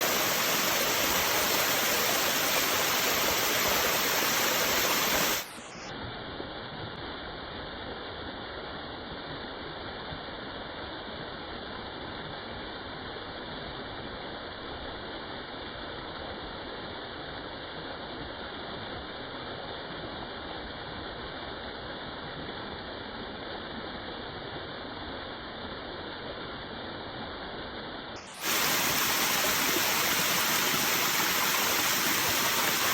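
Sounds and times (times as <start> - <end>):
waterfall rushing: 0.0 - 5.6, 28.2 - 32.9.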